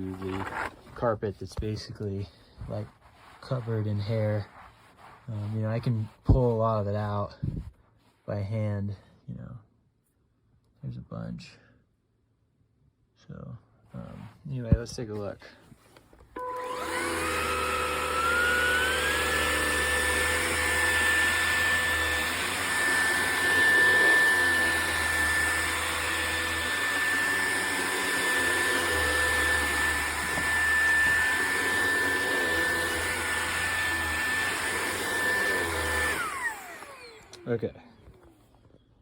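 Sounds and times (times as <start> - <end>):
stick vacuum motor whining: 16.2 - 39.0.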